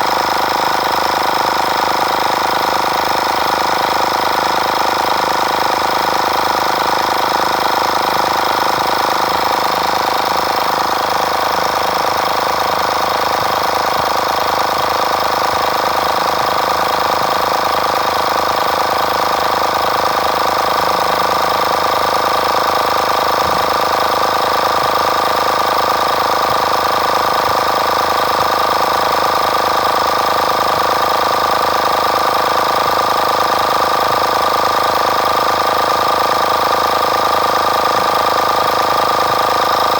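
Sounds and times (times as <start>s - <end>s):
air compressor buzzing: 0.0s - 39.9s.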